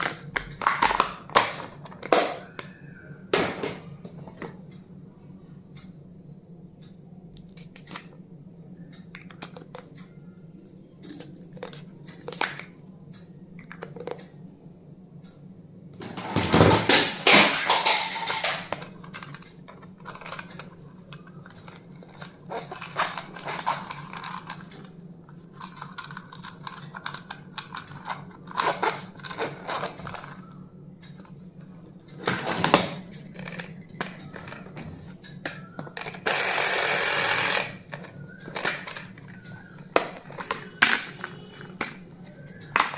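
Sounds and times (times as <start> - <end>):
steady low hum: 0.0 - 42.9.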